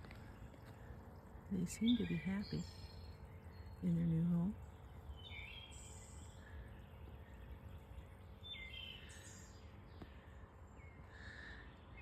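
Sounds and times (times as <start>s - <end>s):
birds chirping: 0.0s - 12.0s.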